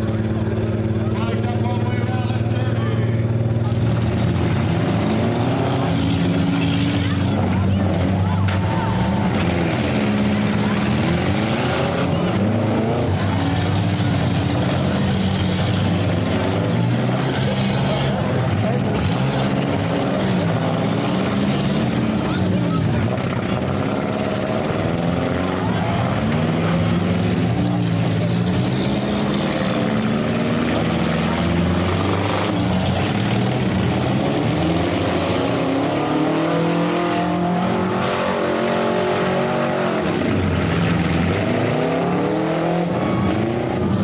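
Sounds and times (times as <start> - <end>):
car engines revving: 0.0 - 44.0.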